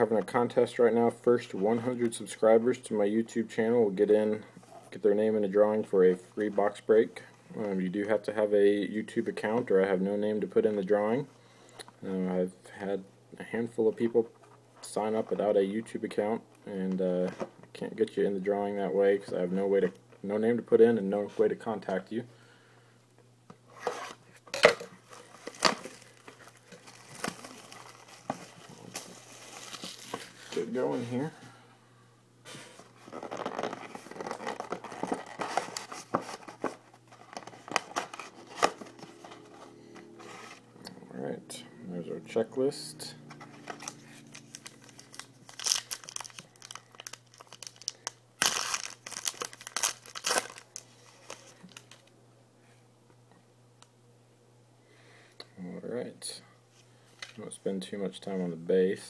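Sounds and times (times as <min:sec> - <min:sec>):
packaging crinkling and tearing: 0:25.0 - 0:30.8, 0:33.0 - 0:39.1, 0:43.6 - 0:52.1
light wrapper rustles: 0:43.7 - 0:52.1.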